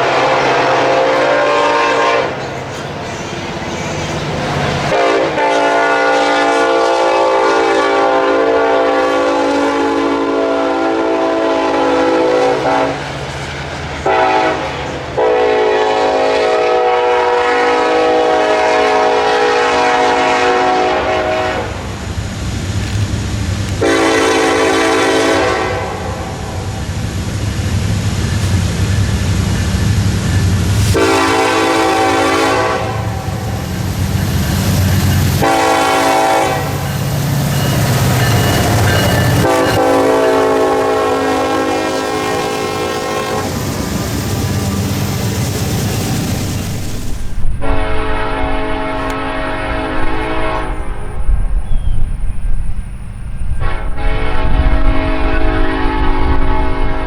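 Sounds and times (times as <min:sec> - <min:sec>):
locomotive air horn: 0:00.0 - 0:02.5, 0:04.8 - 0:13.3, 0:14.0 - 0:21.9, 0:23.7 - 0:26.9, 0:30.8 - 0:33.9, 0:34.9 - 0:37.2, 0:37.8 - 0:43.7, 0:47.6 - 0:51.2, 0:53.5 - 0:57.0
low rumble of passing train: 0:00.0 - 0:57.0.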